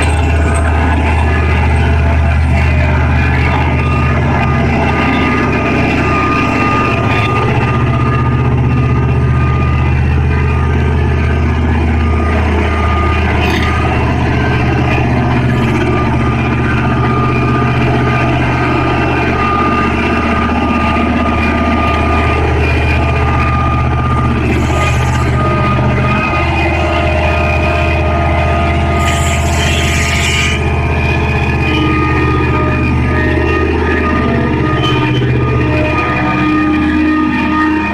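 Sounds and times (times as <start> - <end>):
diesel engine low hum: 0.0 - 37.9
thin steady whine: 0.0 - 37.9.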